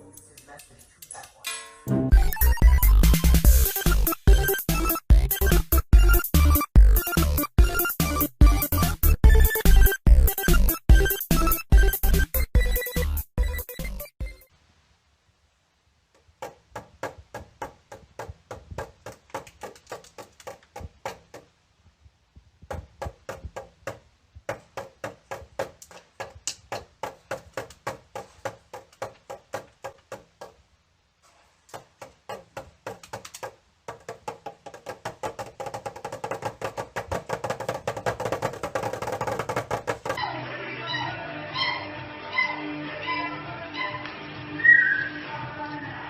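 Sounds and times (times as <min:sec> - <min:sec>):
rapid wooden knocking: 0:16.2 - 0:21.6, 0:22.6 - 0:30.7, 0:31.7 - 0:40.2.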